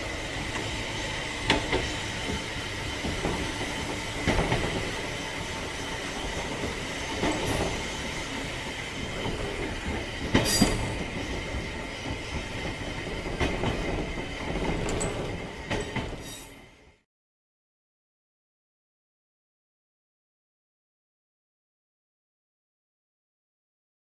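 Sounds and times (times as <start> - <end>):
train running on track rumble: 0.0 - 17.0
wheel clack over rail joint: 1.4 - 8.0, 9.2 - 16.6.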